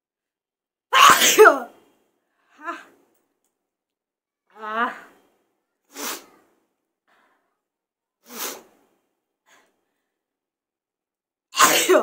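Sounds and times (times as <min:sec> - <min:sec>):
woman breathing: 0:05.1 - 0:10.3
hissing breath out: 0:05.9 - 0:07.5, 0:08.2 - 0:09.8.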